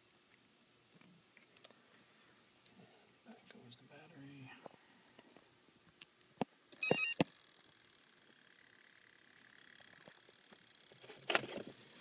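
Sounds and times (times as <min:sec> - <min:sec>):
stepped electronic tones: 0:06.8 - 0:07.2.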